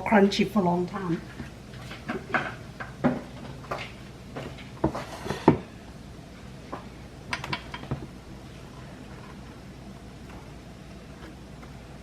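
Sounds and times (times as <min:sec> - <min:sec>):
kitchen knocks and clatters: 0:01.4 - 0:05.7, 0:07.3 - 0:08.1.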